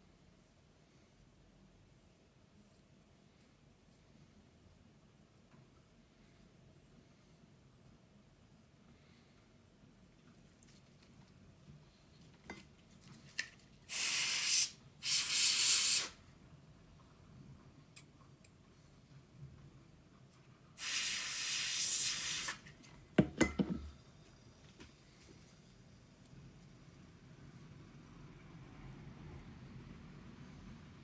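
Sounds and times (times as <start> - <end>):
compressed air duster hissing: 13.9 - 16.2, 20.8 - 22.6.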